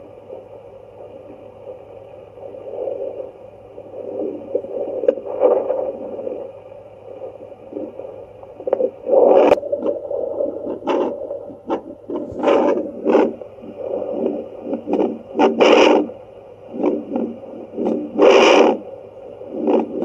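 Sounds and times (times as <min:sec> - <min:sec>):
doppler speaker hiss and hum: 0:00.0 - 0:20.0
probe scraping swishes: 0:10.6 - 0:16.1.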